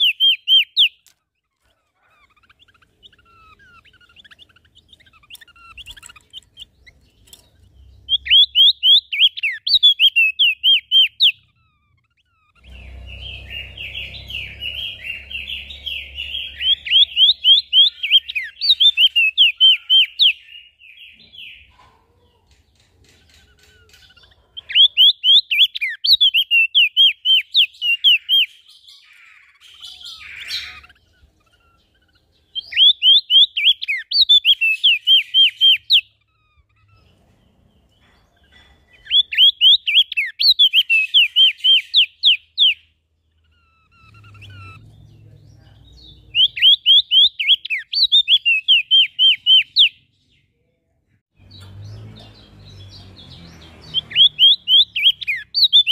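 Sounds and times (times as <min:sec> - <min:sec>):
songbird chirping: 0:00.0 - 0:55.9.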